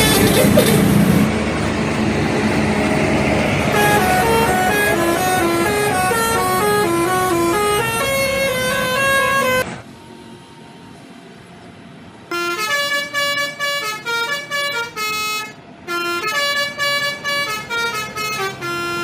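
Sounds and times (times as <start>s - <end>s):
musical air horn playing tune: 3.6s - 9.6s, 12.3s - 19.0s.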